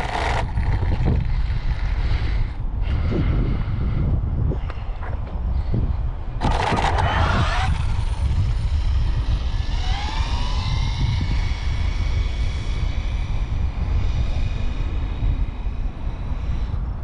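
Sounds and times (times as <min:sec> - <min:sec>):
electric motor whine: 0:00.0 - 0:01.3, 0:06.4 - 0:14.9
wind rumble on microphone: 0:00.0 - 0:17.0.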